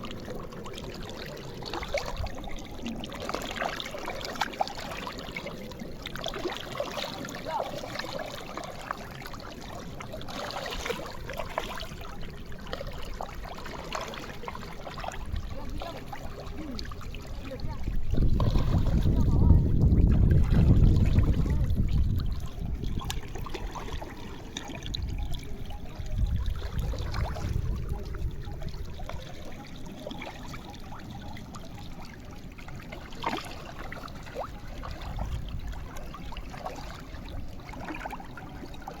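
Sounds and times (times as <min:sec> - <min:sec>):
water trickling and splashing: 0:00.0 - 0:39.0.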